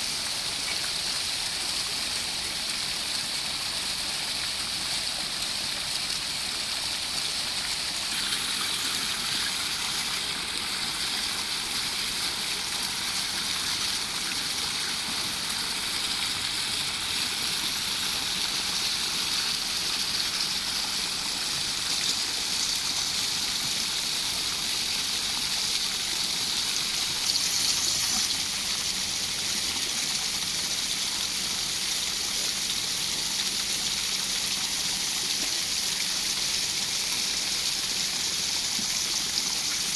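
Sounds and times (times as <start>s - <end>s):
fountain water splashing: 0.0s - 39.9s.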